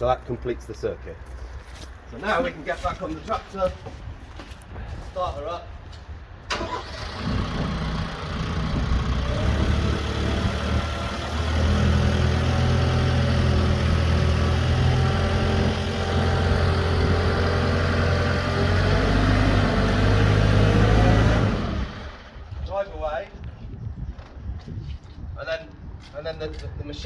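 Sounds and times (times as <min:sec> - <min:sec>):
tractor diesel engine idling: 0:06.5 - 0:22.4.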